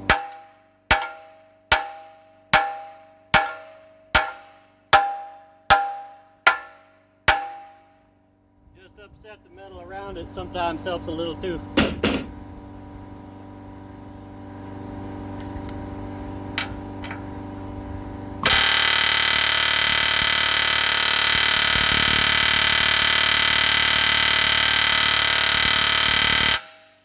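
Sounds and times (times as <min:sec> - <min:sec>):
air hammer hammering metal: 0:00.0 - 0:08.0, 0:11.8 - 0:12.4
steady hum: 0:00.0 - 0:22.7.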